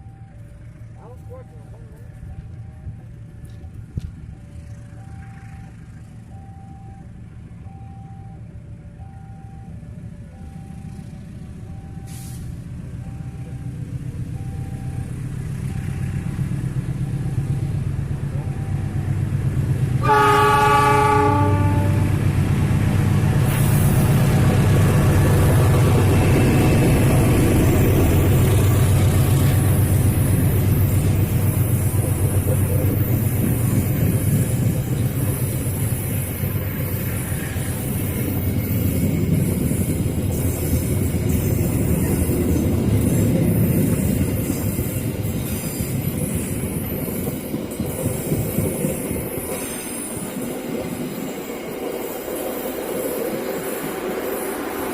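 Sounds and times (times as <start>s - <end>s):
train engine and wheel noise: 0.0s - 54.9s
train horn blast: 20.0s - 22.2s.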